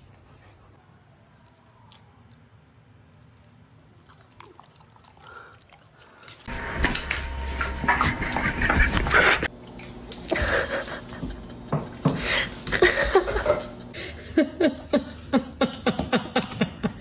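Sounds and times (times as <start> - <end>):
person chuckling: 7.0 - 9.5, 10.2 - 17.0.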